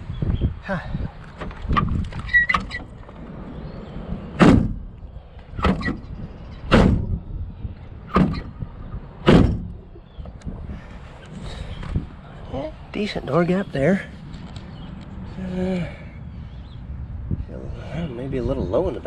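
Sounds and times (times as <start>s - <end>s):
car door clunking shut: 4.2s - 4.9s, 5.6s - 6.0s, 6.7s - 7.2s, 8.1s - 8.6s, 9.2s - 9.8s
car door latch clicks: 4.4s - 4.8s, 5.6s - 6.0s, 6.7s - 7.2s.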